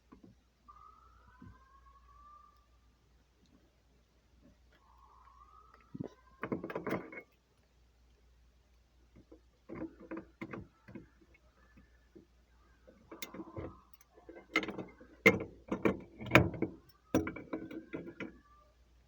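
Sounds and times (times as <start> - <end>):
hard objects clicking and rattling: 9.2 - 18.4.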